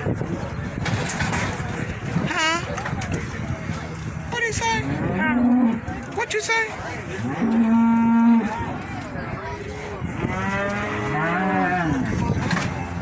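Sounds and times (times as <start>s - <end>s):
cattle mooing: 7.2s - 8.6s, 10.2s - 13.0s.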